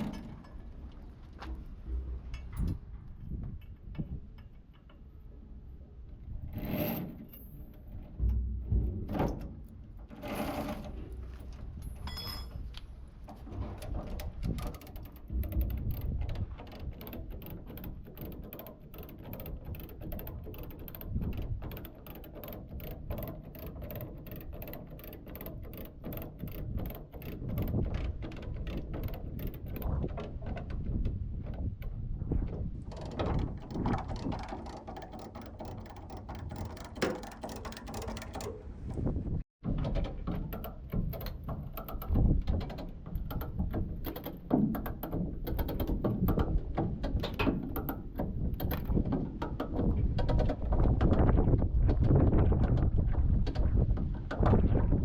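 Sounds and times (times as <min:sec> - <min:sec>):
mechanical ticking and clanking: 0:33.1 - 0:38.7.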